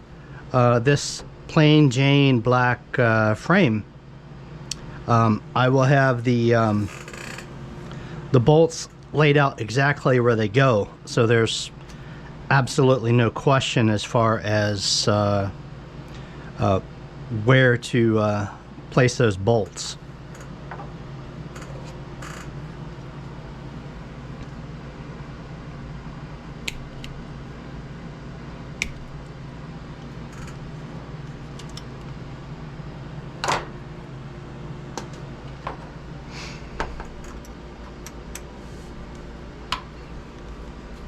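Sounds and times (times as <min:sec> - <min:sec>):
steady low hum: 0:00.0 - 0:41.0
metallic clicks and taps: 0:28.8 - 0:29.1.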